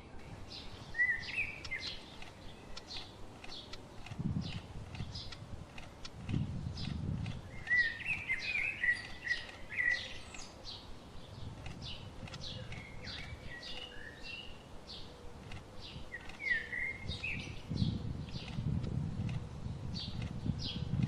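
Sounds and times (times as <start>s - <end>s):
birds chirping: 0.0s - 21.0s
low warbled bird phrases: 6.3s - 18.8s.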